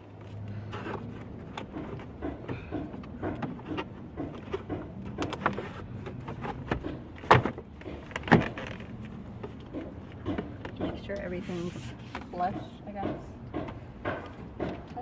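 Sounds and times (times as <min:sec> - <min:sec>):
plastic trim panel knocking and rattling: 0:01.6 - 0:11.2.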